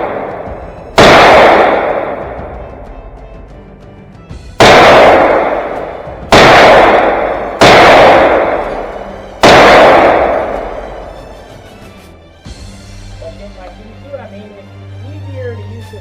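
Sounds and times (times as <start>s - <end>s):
gunshots with long echo: 0.0s - 3.1s, 4.6s - 11.8s.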